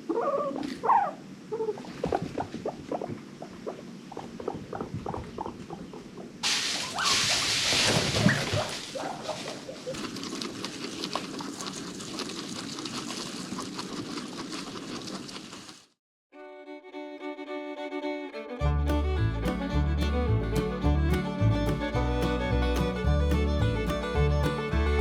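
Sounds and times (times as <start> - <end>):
rustling hiss: 6.4 - 13.4.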